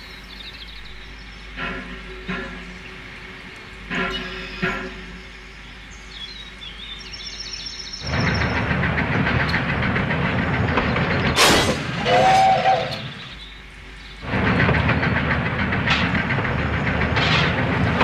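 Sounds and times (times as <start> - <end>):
steam locomotive chuffing: 0.0 - 18.0
two-note steam whistle: 12.0 - 13.1.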